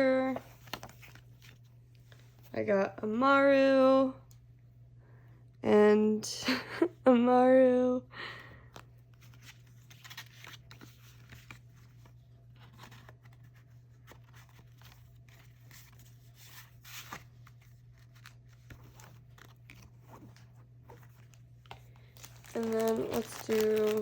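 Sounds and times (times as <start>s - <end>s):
steady low hum: 0.0s - 10.0s
packaging rustling and crinkling: 9.2s - 24.0s.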